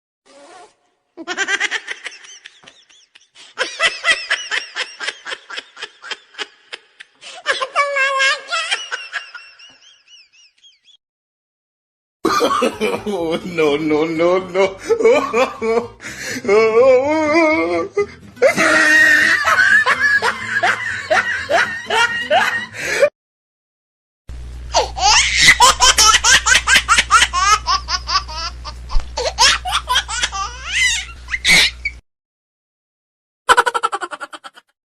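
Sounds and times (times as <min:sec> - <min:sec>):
person laughing: 0:01.2 - 0:11.0, 0:12.3 - 0:23.1, 0:24.7 - 0:31.9, 0:33.5 - 0:34.7
rapid high-pitched laughing: 0:18.4 - 0:22.9, 0:24.8 - 0:32.0, 0:33.5 - 0:34.7
steady low hum: 0:24.3 - 0:32.0.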